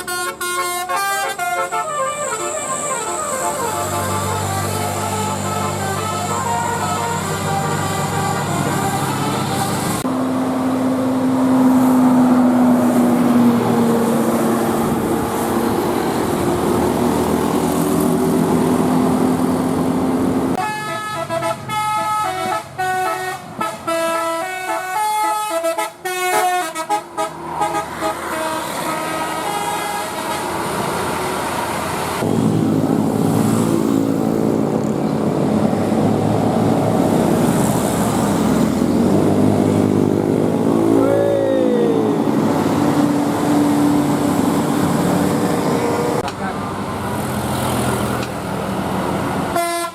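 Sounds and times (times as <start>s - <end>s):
musical air horn tune: 0.0s - 10.1s, 20.6s - 30.5s, 49.5s - 49.9s
bus engines and road traffic: 0.0s - 49.9s.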